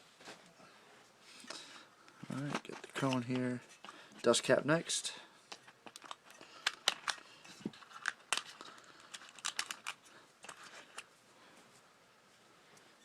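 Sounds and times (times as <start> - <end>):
speaker cone crinkling and clicking: 2.1 - 4.9, 5.5 - 11.1.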